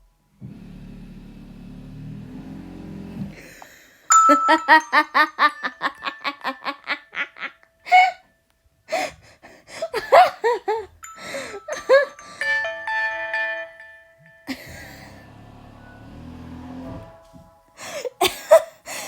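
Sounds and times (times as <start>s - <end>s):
phone ringtone: 4.1s - 8.1s, 11.0s - 18.1s
person laughing: 4.5s - 8.2s, 9.8s - 12.2s, 14.5s - 15.2s, 17.8s - 19.0s.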